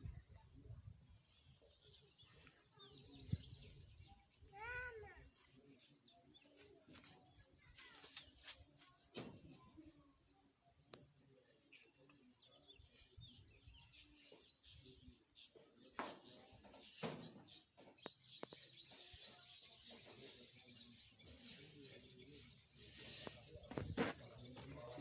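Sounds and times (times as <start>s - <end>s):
birds chirping: 0.0s - 25.0s.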